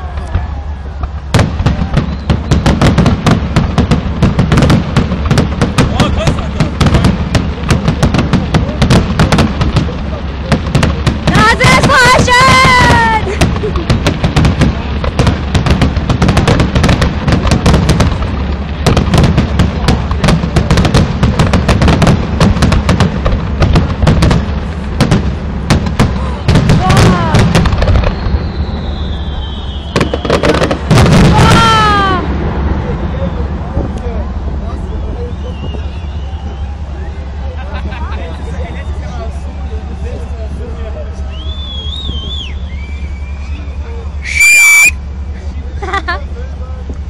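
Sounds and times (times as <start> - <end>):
fireworks bursts and crackling bangs: 0.0 - 47.0
low rumble: 0.0 - 47.0.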